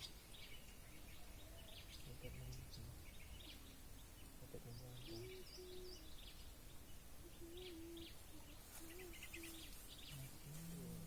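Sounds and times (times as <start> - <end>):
low wavering cooing calls: 4.8 - 11.0.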